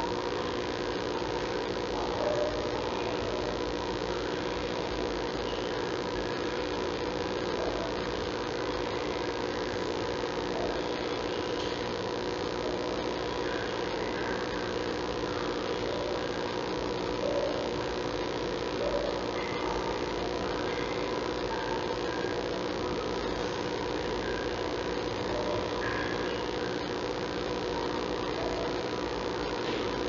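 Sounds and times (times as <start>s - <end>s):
electrical hum and hiss: 0.0s - 30.0s.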